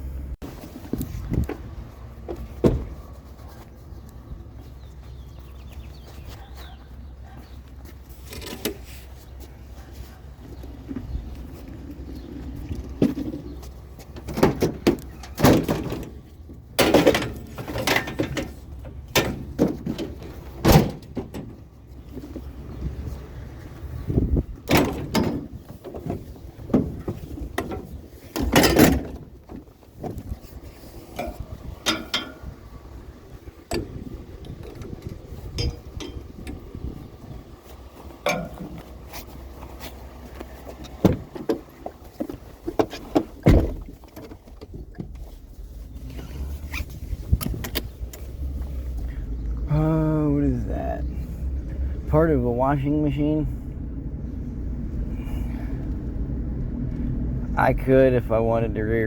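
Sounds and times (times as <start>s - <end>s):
low steady rumble: 0.0s - 59.0s
scrap metal knocking and clattering: 12.2s - 21.7s, 24.6s - 32.6s, 33.6s - 36.7s, 38.0s - 39.1s.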